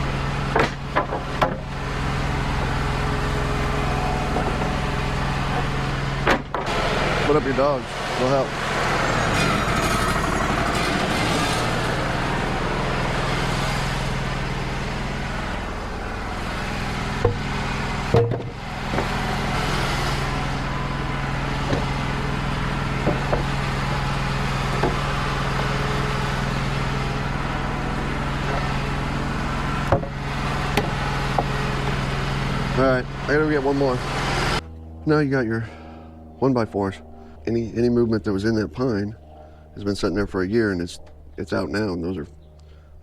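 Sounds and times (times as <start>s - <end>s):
sawmill engine running: 0.0s - 43.0s
sharp knocks: 17.2s - 19.2s, 23.0s - 23.6s.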